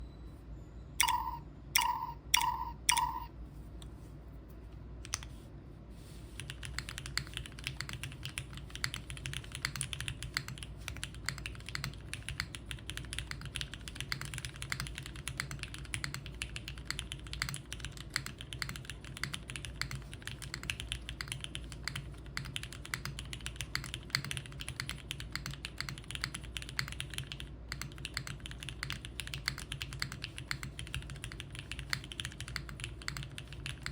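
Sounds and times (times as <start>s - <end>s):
short beeps: 0.0s - 3.3s
mechanical keyboard typing: 1.0s - 3.3s, 6.4s - 33.9s.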